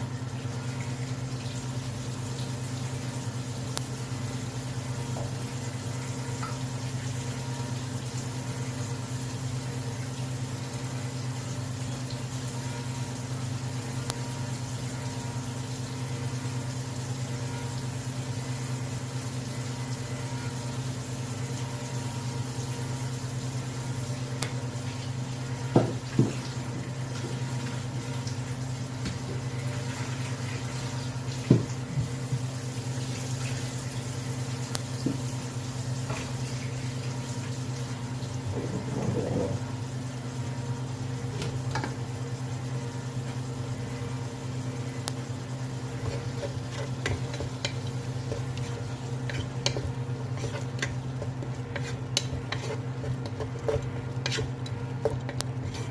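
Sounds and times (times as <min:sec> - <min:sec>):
scraping or bubbling: 0:38.4 - 0:39.8.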